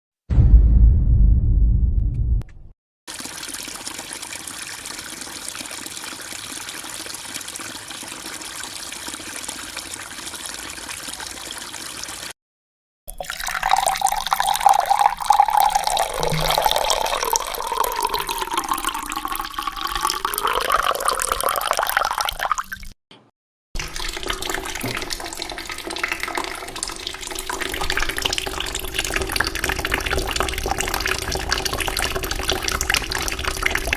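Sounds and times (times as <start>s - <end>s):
steady running water: 3.1s - 12.4s, 13.3s - 22.7s, 23.8s - 33.9s
splashy pouring water: 13.2s - 23.0s, 23.8s - 33.9s.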